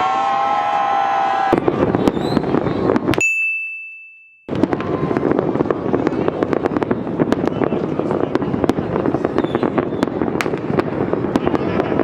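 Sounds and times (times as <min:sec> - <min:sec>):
fireworks bangs and crackles: 0:01.2 - 0:03.2, 0:04.5 - 0:12.0.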